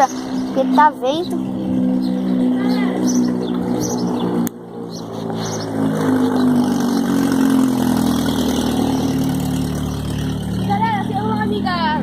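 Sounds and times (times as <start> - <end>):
vehicle engine humming: 0.0 - 12.0.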